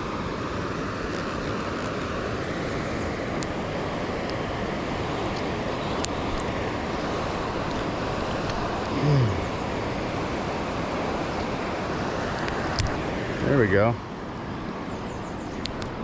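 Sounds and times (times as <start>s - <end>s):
floodwater rushing: 1.7s - 13.6s.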